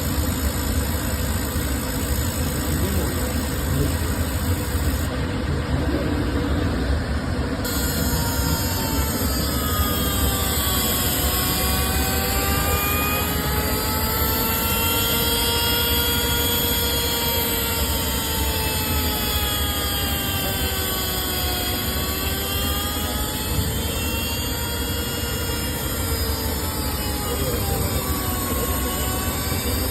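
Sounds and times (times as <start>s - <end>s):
motor whine: 0.0s - 29.9s
sandblasting rush: 7.6s - 29.9s.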